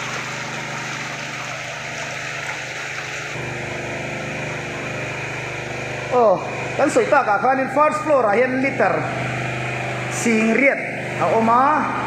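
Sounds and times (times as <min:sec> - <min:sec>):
water rushing: 0:00.0 - 0:03.4
water pump running: 0:00.0 - 0:12.0.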